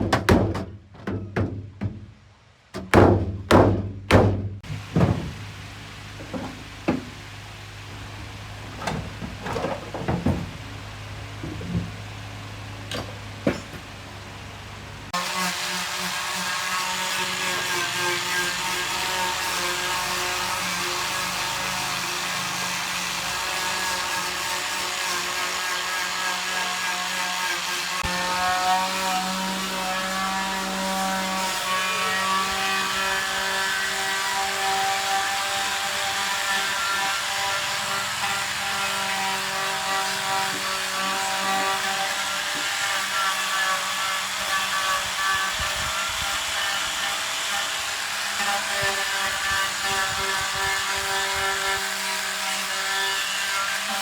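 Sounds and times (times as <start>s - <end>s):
power tool running: 32.4s - 54.0s.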